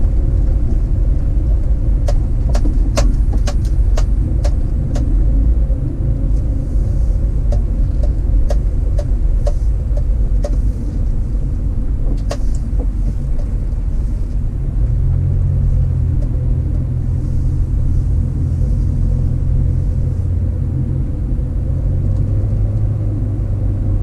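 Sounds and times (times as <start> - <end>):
sharp clicks and knocks: 0.0 - 5.2, 7.4 - 11.1, 12.0 - 14.4
car engine and road rumble: 0.0 - 24.0.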